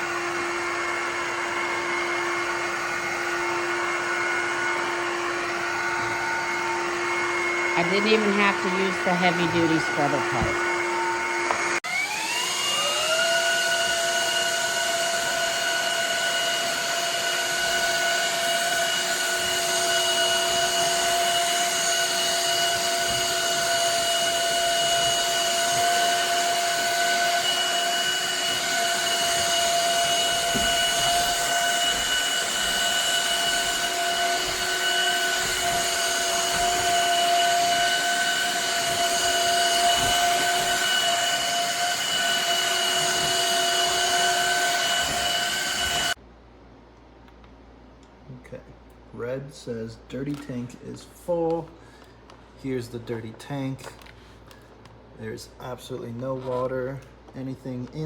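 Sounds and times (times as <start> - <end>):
suction noise: 0.0 - 46.2
vacuum motor whine: 0.0 - 46.2.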